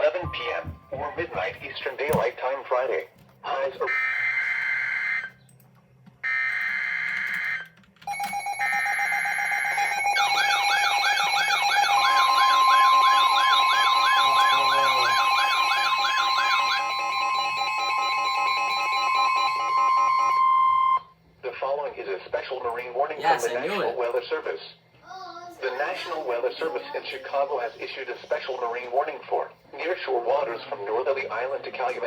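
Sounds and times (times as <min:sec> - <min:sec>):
warbling alarm: 0:03.9 - 0:05.4, 0:06.2 - 0:21.1
steady high warning tone: 0:06.2 - 0:21.2.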